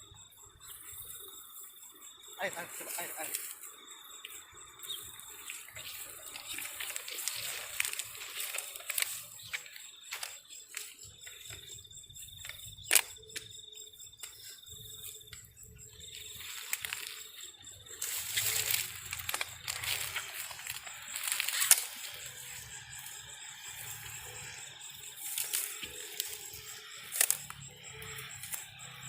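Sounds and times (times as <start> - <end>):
insect trilling: 0.0 - 29.0
rustling background noise: 5.5 - 11.6, 15.9 - 24.6.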